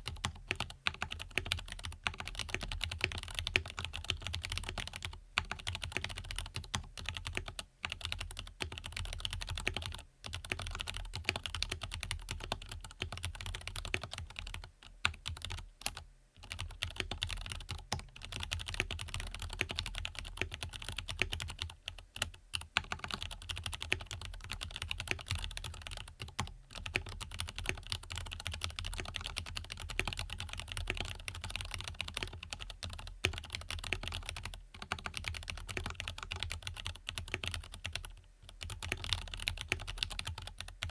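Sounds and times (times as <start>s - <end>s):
fast mechanical keyboard typing: 0.0s - 40.9s.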